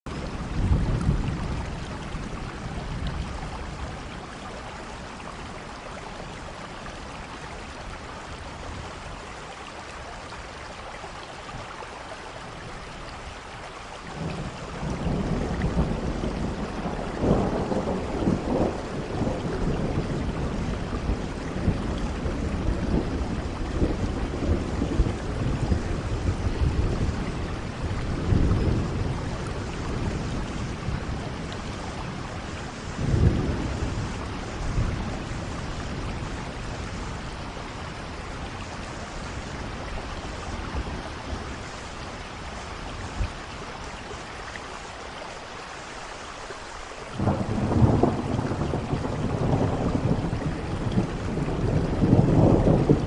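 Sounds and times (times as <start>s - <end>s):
steady rain: 0.0s - 53.0s
rolling thunder: 0.1s - 6.6s, 14.1s - 43.4s, 47.1s - 53.0s.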